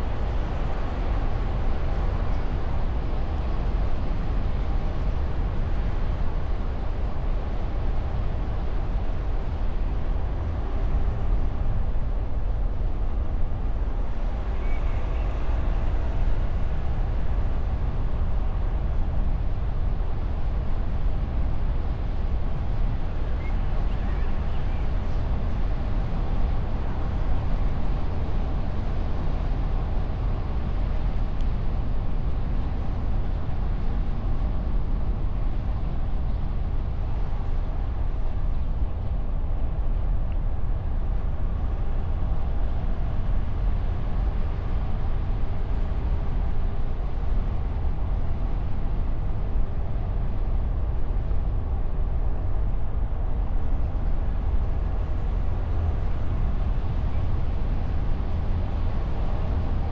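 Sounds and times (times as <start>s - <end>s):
wind rush: 0.0s - 59.9s.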